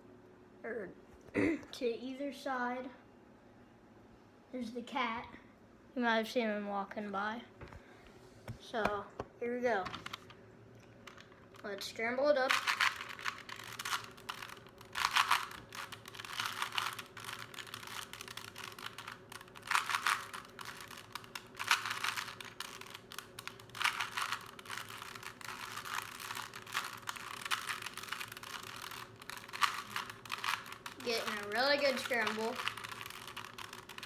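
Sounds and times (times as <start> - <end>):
puzzle cube plastic clicking: 12.5 - 34.0.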